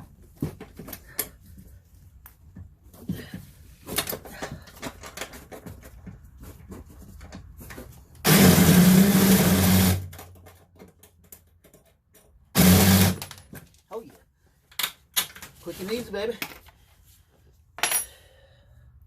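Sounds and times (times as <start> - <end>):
impact driver running: 8.2 - 10.1, 12.6 - 13.3.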